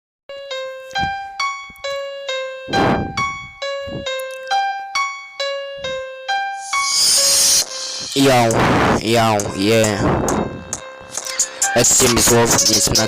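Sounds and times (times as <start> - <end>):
keyboard playing short notes: 0.3 - 13.0
bass drum hits: 2.7 - 4.1.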